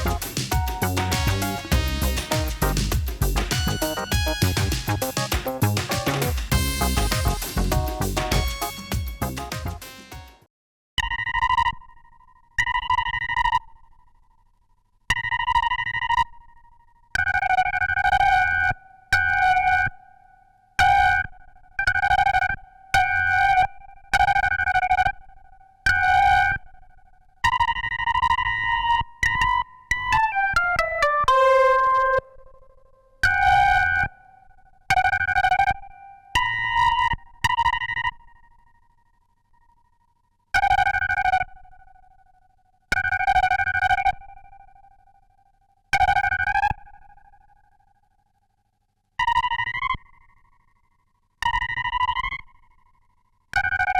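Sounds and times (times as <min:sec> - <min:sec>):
synthesizer shrill fluttering calls: 0:00.0 - 0:10.2.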